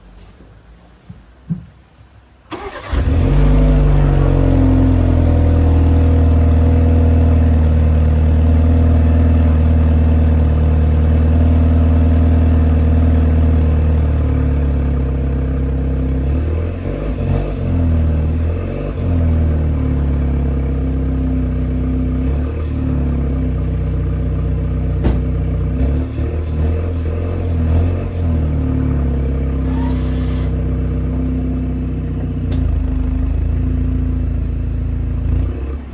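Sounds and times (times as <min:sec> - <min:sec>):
car engine cranking: 0:02.5 - 0:04.6, 0:29.4 - 0:30.8
car engine idling: 0:02.5 - 0:16.9, 0:17.5 - 0:35.9.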